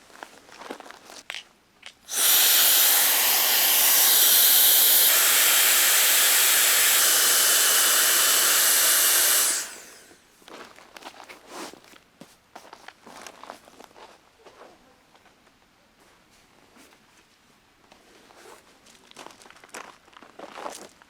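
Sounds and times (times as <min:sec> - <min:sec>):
loud steady hiss: 0:02.1 - 0:10.2.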